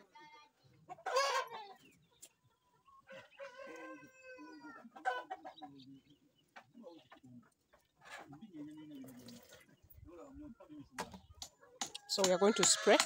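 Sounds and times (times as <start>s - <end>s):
chicken squawking: 0.9s - 1.8s.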